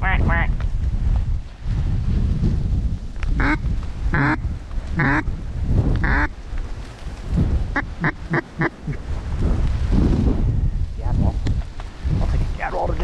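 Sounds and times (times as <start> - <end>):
wind rumble: 0.0 - 13.0
mouth-made duck quacks: 3.4 - 3.6, 4.2 - 4.4, 5.0 - 5.3, 6.0 - 6.3, 7.8 - 9.0.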